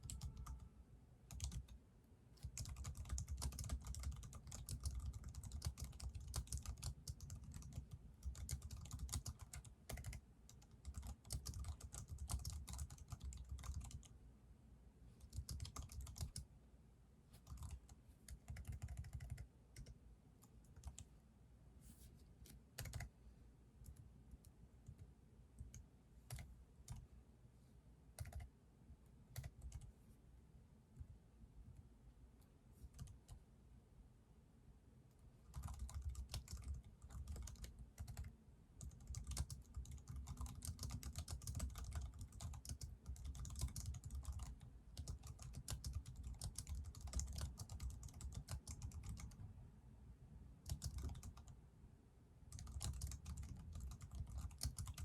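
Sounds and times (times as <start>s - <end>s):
typing on keyboard: 0.0s - 0.6s, 1.3s - 1.8s, 2.4s - 14.1s, 15.2s - 16.5s, 17.4s - 21.1s, 22.4s - 23.1s, 23.8s - 27.0s, 28.2s - 28.5s, 29.4s - 29.9s, 32.9s - 33.4s, 35.5s - 49.5s, 50.6s - 51.6s, 52.5s - 55.0s.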